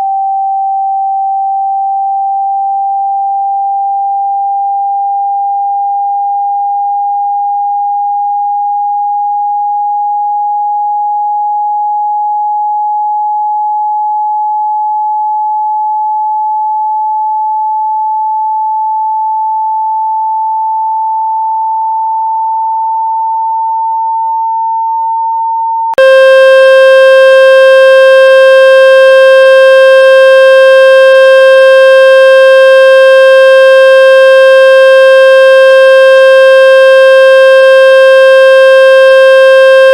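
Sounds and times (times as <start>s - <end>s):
buzzy low tone: 26.0s - 39.9s
pure tone rising in pitch: 26.0s - 39.9s.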